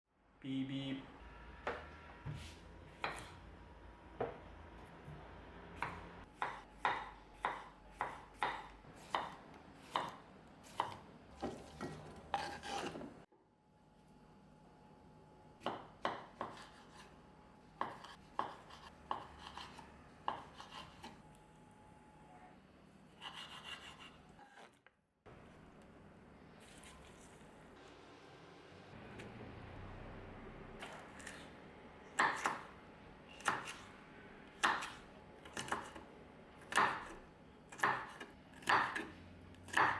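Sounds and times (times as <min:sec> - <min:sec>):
knife chopping on cutting board: 0:01.7 - 0:03.4, 0:05.8 - 0:13.2, 0:15.6 - 0:17.2, 0:17.8 - 0:21.2, 0:23.2 - 0:24.2, 0:32.2 - 0:32.8, 0:33.4 - 0:33.9, 0:34.6 - 0:39.9.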